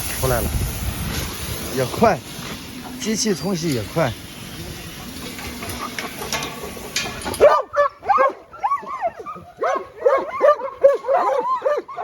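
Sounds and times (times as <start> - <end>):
pressure washer spray hiss: 0.0 - 7.4
dogs barking and yipping: 5.4 - 12.0.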